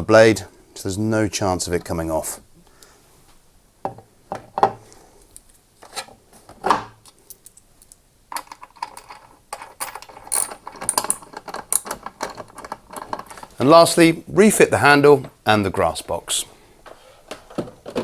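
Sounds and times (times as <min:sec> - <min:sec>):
plastic and metal parts clattering: 0:08.3 - 0:13.6, 0:17.3 - 0:18.0.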